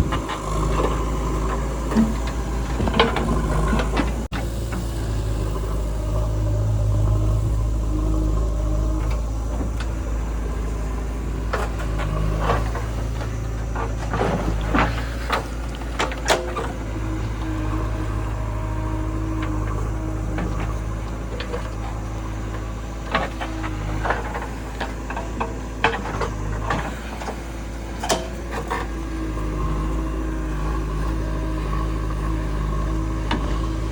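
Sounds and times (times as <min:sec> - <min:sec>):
heavy diesel engine running: 0:00.0 - 0:33.9
sharp metal clanks and knocks: 0:28.0 - 0:28.6.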